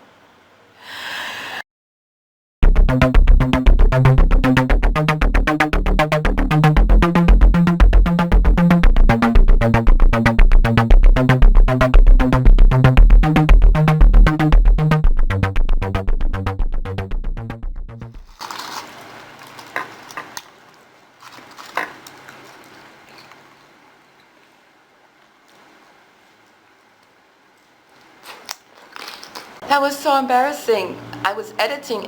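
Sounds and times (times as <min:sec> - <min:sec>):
electronic synthesizer music: 0:02.6 - 0:18.3.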